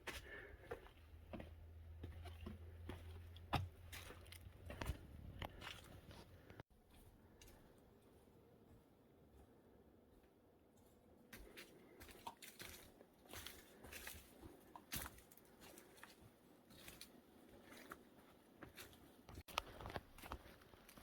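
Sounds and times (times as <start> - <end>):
crunching footsteps on a path: 0.0 - 21.0.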